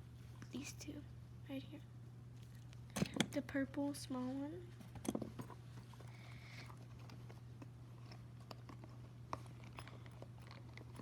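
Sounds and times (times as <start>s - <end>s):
low background hum: 0.0s - 11.0s.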